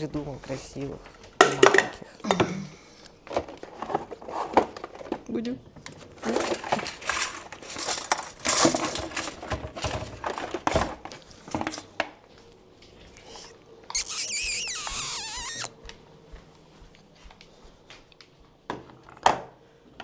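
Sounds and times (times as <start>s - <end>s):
crinkling and rustling handling: 3.2s - 11.9s
puppy whining: 14.0s - 15.7s.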